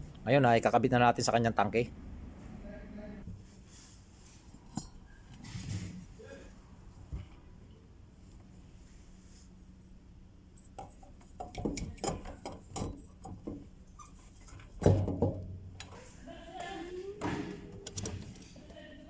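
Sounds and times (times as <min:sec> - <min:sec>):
heavy clunk: 0:14.7 - 0:15.6.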